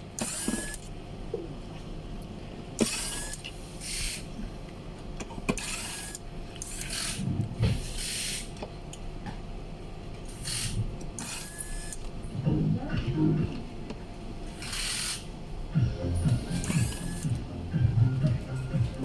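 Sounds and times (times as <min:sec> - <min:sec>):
steady low hum: 0:00.0 - 0:19.0
screwdriver scraping screws: 0:10.4 - 0:12.0.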